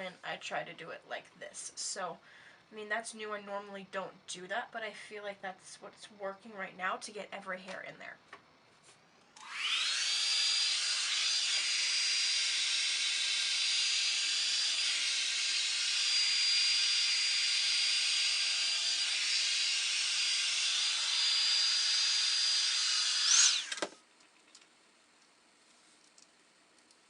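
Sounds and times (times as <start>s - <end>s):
hot-air brush dryer whine: 9.4s - 21.8s, 22.7s - 23.9s.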